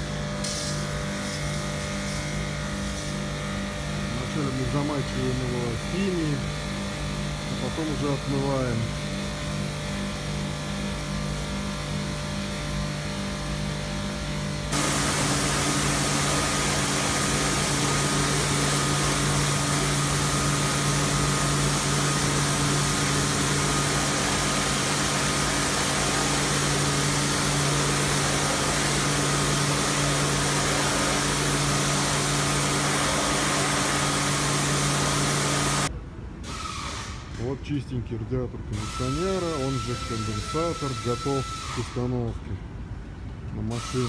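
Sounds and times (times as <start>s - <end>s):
pressure washer pump humming: 0.0s - 37.4s, 38.6s - 42.5s, 43.6s - 44.0s
water spraying hiss: 0.4s - 3.3s, 14.7s - 35.9s.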